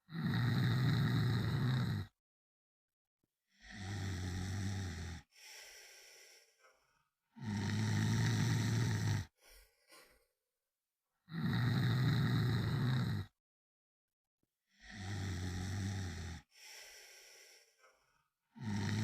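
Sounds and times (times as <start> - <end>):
person snoring: 0.1 - 2.1, 3.5 - 6.8, 7.4 - 10.2, 11.3 - 13.4, 14.7 - 18.0, 18.6 - 19.0
soft breath out: 5.3 - 7.1, 9.3 - 10.3, 16.5 - 18.3.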